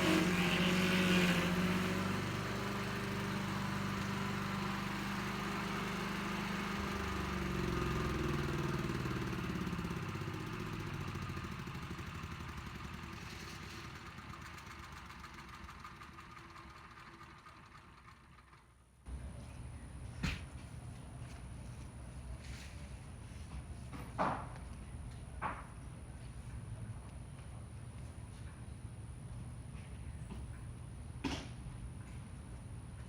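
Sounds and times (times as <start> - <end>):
stump grinder engine running: 0.0 - 18.8.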